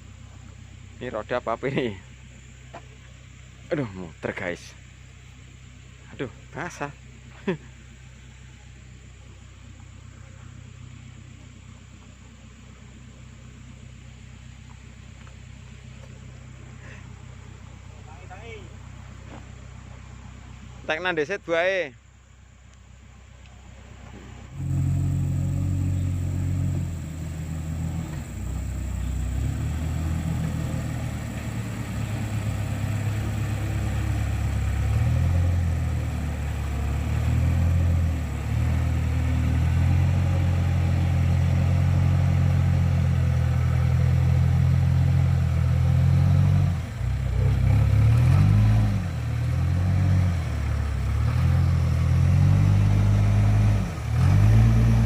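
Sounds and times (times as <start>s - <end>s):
heavy diesel engine under load: 23.8s - 55.0s.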